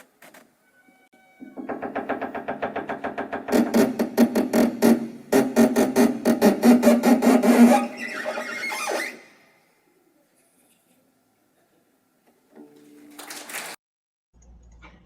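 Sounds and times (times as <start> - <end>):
strings imitating door creaking: 1.1 - 9.5
strings imitating door knocking: 1.4 - 8.0.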